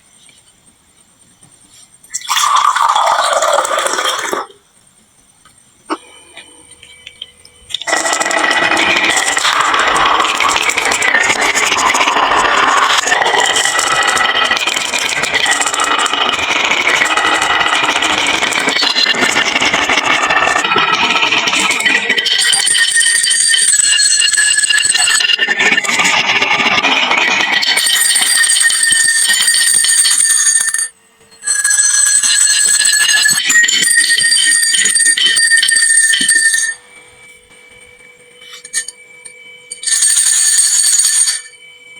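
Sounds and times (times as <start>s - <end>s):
marbles clattering down wooden run: 7.8s - 30.5s.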